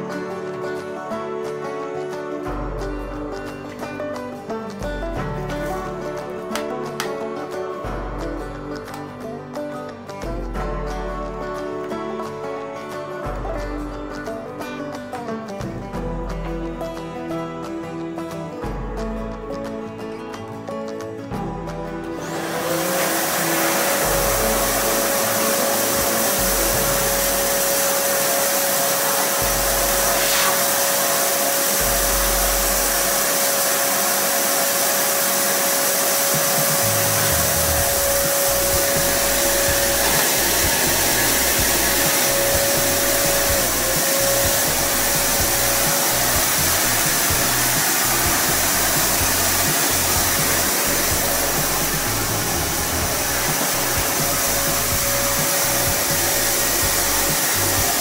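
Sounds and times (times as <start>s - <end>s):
vacuum cleaner motor running: 22.0s - 58.0s.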